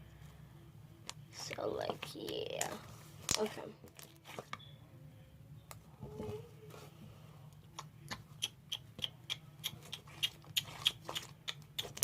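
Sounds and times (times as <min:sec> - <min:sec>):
slime squishing and popping: 0:09.9 - 0:12.0.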